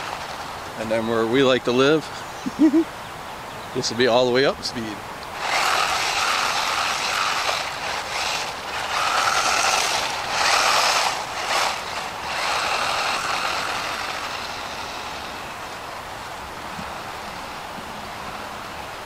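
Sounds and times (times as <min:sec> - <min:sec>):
electric motor whine: 0:05.3 - 0:16.0.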